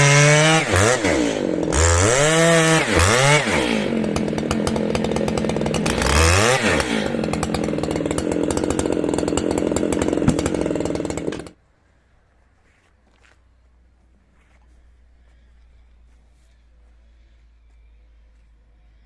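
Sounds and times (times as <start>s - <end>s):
chainsaw sawing through wood: 0.0s - 11.6s.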